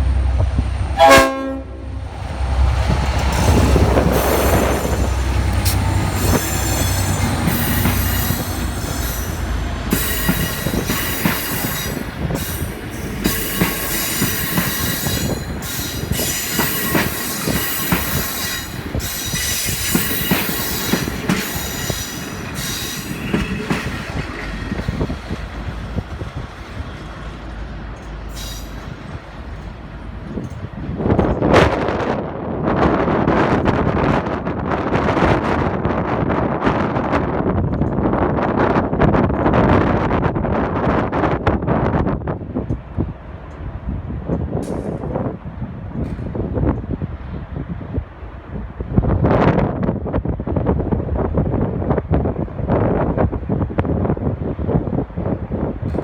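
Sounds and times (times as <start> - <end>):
train wheels rolling on rails: 0.0 - 56.0
locomotive horn: 0.9 - 2.1.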